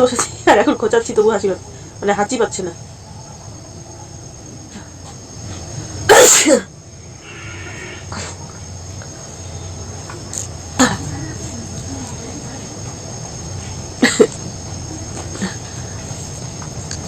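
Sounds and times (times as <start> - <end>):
person sneezing loudly: 6.1 - 6.7.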